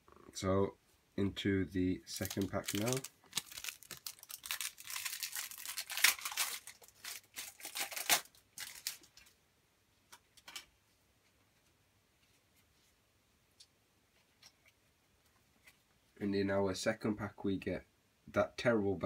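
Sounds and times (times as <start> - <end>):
foil packet tearing and crinkling: 2.1 - 9.2
cards rustling: 2.1 - 9.3.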